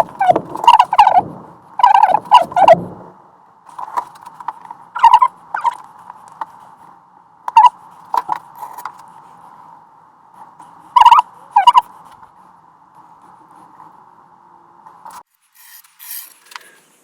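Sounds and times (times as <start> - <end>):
steady faint hum: 0.0 - 17.0.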